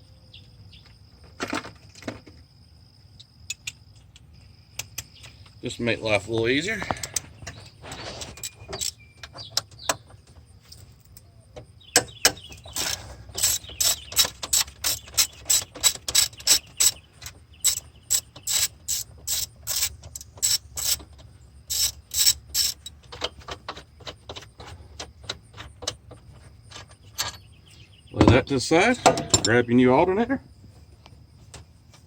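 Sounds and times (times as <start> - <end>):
socket ratchet clicking: 12.0 - 23.3.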